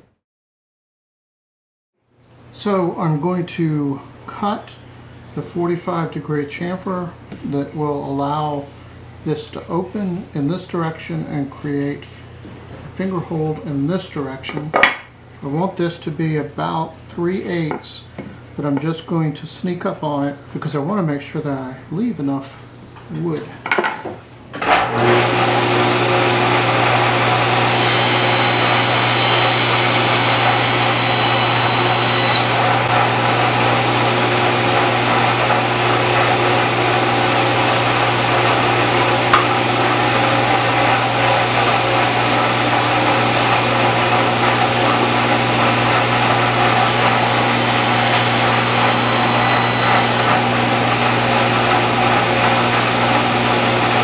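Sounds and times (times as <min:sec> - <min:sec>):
power tool cutting wood: 0:24.7 - 0:54.0
woodworking power tool running: 0:24.8 - 0:54.0.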